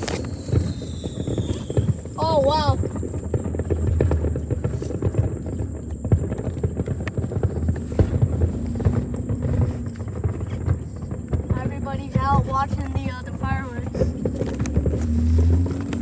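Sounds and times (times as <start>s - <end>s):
fireworks pops and bangs: 0.0s - 16.0s
low rumble: 0.0s - 16.0s.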